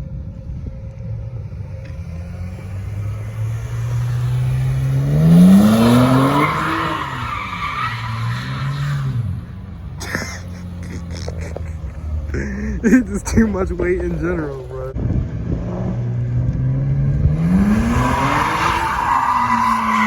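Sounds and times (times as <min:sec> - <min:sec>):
car engine revving: 0:00.6 - 0:20.0
tyres squealing: 0:03.6 - 0:14.9, 0:17.6 - 0:20.0.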